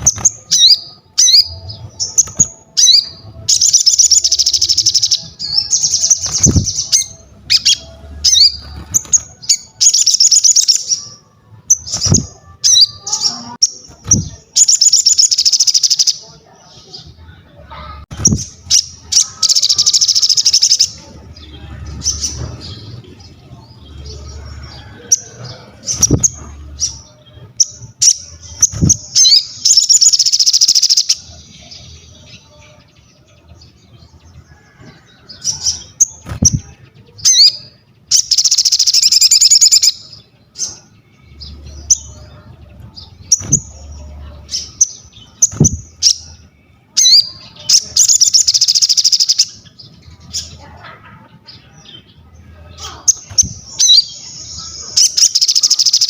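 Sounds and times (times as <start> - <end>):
sharp bird chirps: 0.0 - 11.1, 11.7 - 16.2, 18.1 - 21.0, 25.8 - 31.4, 37.2 - 42.3, 47.0 - 49.7, 52.9 - 56.0
songbird chattering song: 0.0 - 56.0.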